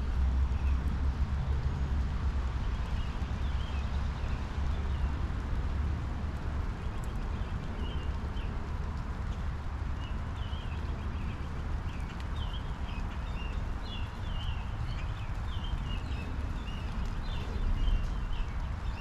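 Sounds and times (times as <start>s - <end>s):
rain falling: 0.0s - 19.0s
songbird chirping: 10.0s - 19.0s.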